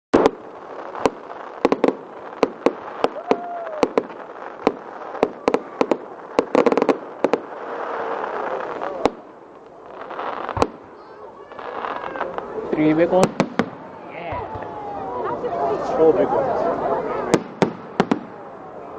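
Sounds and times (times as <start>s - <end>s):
fireworks bangs and cracks: 0.1s - 14.8s, 17.2s - 18.5s
fireworks crackling: 0.1s - 14.8s, 17.1s - 18.6s
firework hiss: 0.2s - 9.3s.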